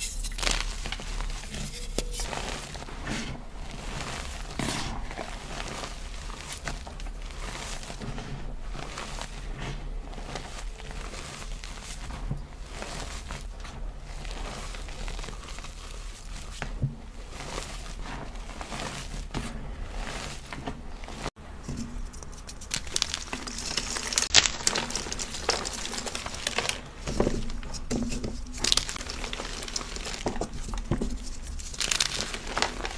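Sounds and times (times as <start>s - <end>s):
chalk being crushed: 0.0s - 13.5s, 21.1s - 32.9s.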